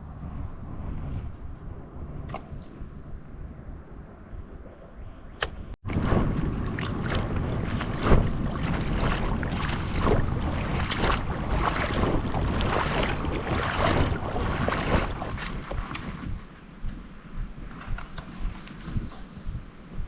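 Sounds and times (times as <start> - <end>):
wind rumbling on microphone: 0.0 - 20.0
water splashing around legs: 5.9 - 20.0.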